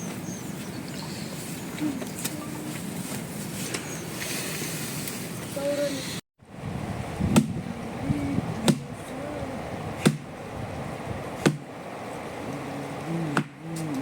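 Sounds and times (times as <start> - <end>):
axe chopping firewood: 8.7 - 9.0, 10.0 - 10.3, 11.4 - 11.7, 13.3 - 13.6.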